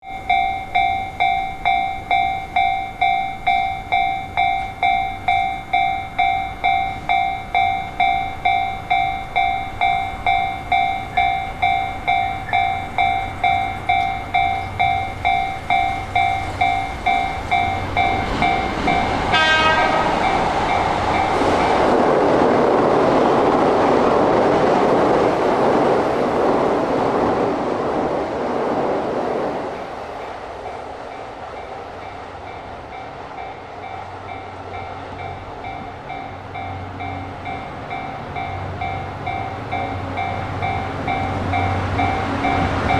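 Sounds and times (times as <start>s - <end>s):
level-crossing warning bell: 0.0s - 25.5s, 29.8s - 42.9s
train wheels and rail clatter: 0.0s - 42.9s
train horn blast: 18.3s - 20.6s.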